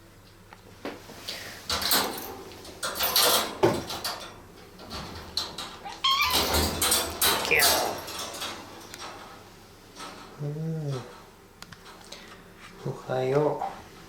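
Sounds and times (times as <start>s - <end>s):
rustling and handling noise: 0.3s - 14.0s.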